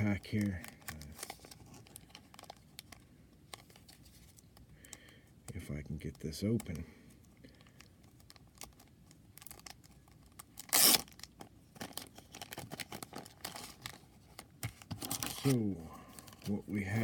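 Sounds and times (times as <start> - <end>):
wrapper crinkling: 7.5 - 15.6
card pack tearing: 8.3 - 14.0.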